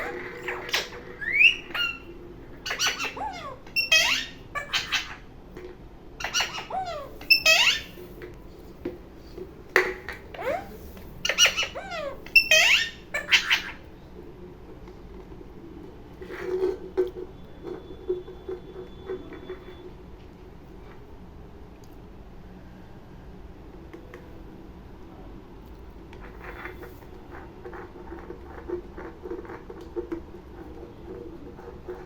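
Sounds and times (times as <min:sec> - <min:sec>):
parrot squawking and chirping: 0:00.0 - 0:05.4, 0:06.2 - 0:08.2, 0:10.2 - 0:14.0.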